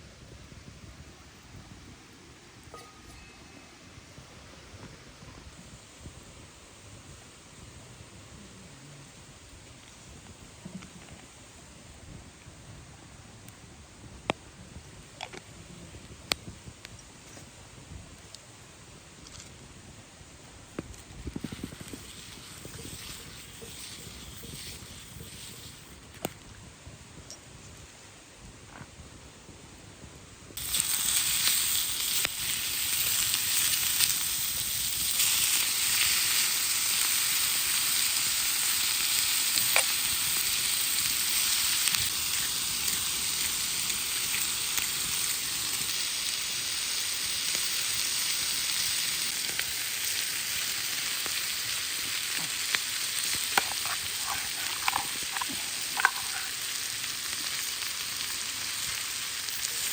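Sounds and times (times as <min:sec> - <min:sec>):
food sizzling on hot plate: 0:21.0 - 0:26.1, 0:30.6 - 0:59.9.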